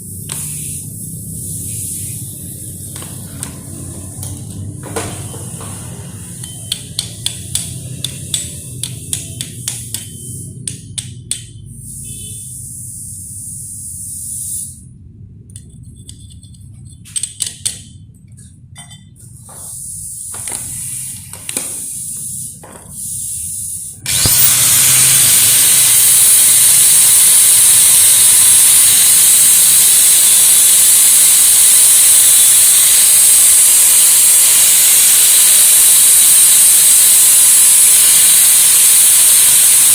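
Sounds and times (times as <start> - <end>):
welding arc crackling hiss: 19.6 - 39.9.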